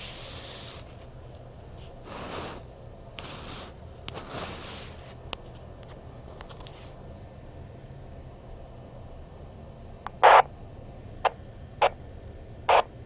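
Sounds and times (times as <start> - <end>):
low steady hum: 0.0 - 13.0
sharp radio clicks: 10.1 - 10.5, 12.7 - 12.9
radio static bursts: 10.2 - 10.5, 12.7 - 12.9.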